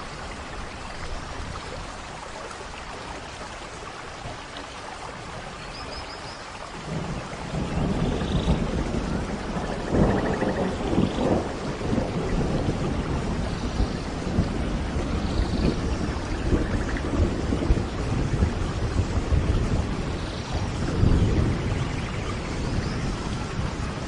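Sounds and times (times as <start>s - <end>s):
steady rain: 0.0s - 24.0s
low rolling thunder: 6.8s - 24.0s.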